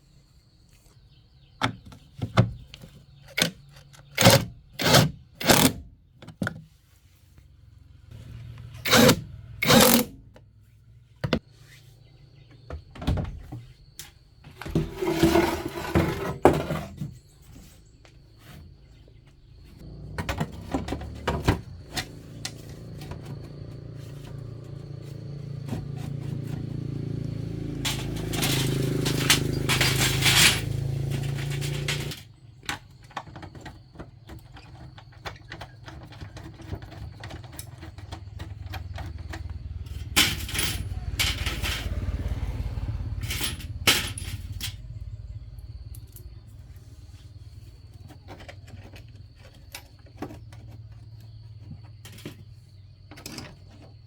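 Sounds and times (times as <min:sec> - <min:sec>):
tools clicking and scraping: 0:03.2 - 0:06.4, 0:08.6 - 0:10.2, 0:27.8 - 0:42.0
motor running: 0:26.0 - 0:32.2.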